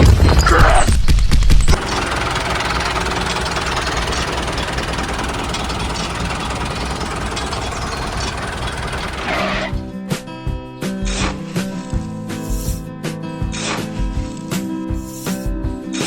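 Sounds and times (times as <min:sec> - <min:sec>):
harvester machine droning: 0:01.7 - 0:09.9.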